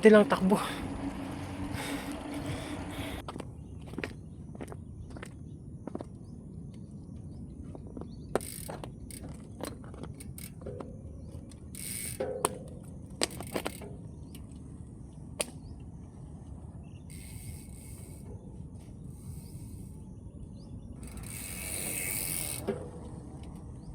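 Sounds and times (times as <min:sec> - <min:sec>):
bicycle ticking and rattling: 0:00.0 - 0:03.2, 0:08.3 - 0:14.7, 0:17.0 - 0:19.9, 0:21.0 - 0:23.9
wind and road rumble: 0:00.0 - 0:23.9.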